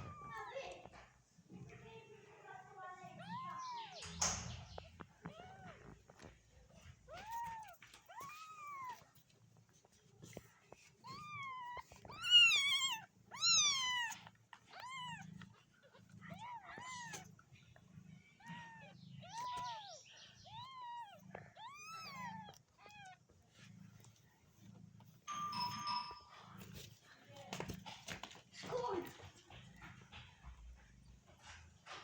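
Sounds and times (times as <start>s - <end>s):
cat meowing: 0.0s - 0.5s, 3.1s - 4.1s, 7.1s - 9.0s, 11.0s - 15.4s, 16.2s - 17.3s, 18.4s - 23.2s.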